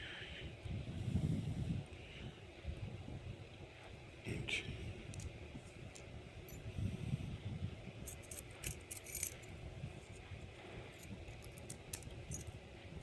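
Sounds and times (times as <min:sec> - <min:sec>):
metal padlock parts clinking: 0:08.0 - 0:09.5, 0:10.9 - 0:12.6.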